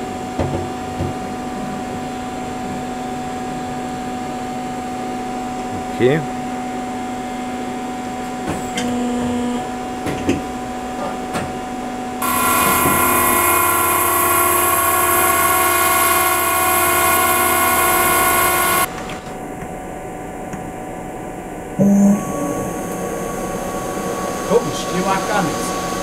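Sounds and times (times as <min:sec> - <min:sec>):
high machine whine: 0:11.7 - 0:26.0
lathe machine hum: 0:12.2 - 0:19.0, 0:22.6 - 0:26.0.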